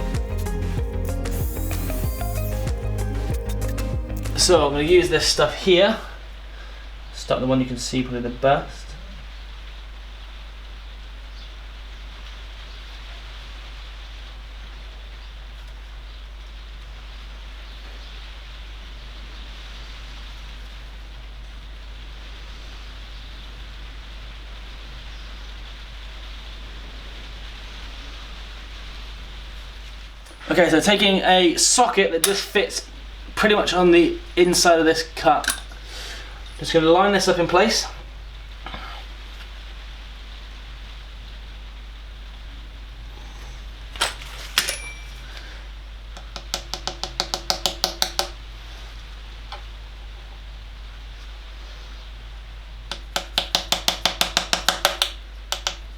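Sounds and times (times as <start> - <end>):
low hum: 0.0 - 6.5
background hiss: 0.0 - 55.9
hammer tapping: 46.2 - 48.4, 52.9 - 55.9.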